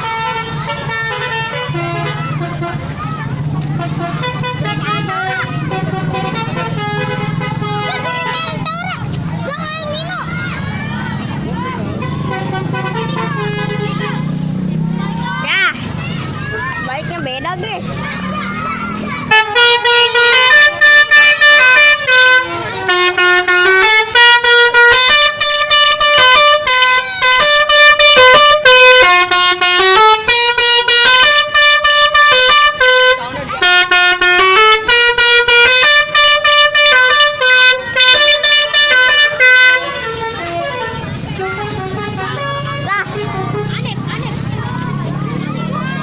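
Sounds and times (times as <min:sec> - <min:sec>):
bus horn playing a tune: 0:00.0 - 0:03.0, 0:03.6 - 0:08.7, 0:12.0 - 0:14.4, 0:19.2 - 0:44.0.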